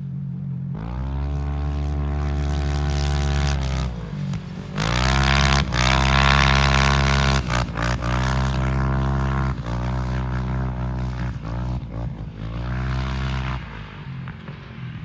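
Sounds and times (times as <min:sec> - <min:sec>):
engine revving hard: 0:04.8 - 0:11.7.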